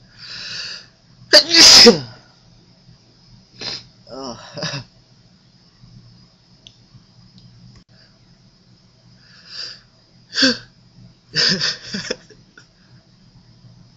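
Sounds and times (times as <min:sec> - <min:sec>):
person sneezing: 0:01.4 - 0:02.2.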